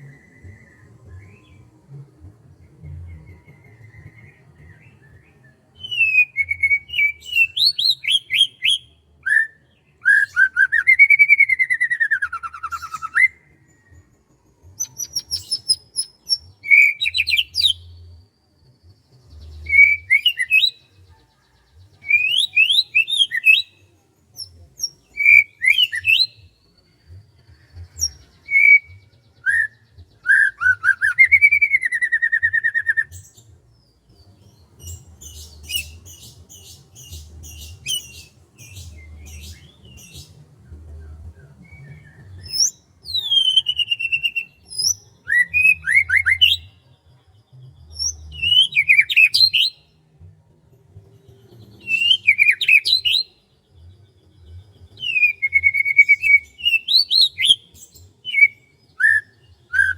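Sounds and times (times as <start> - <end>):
songbird singing whistles and trills: 0.0 - 50.3, 51.2 - 59.9.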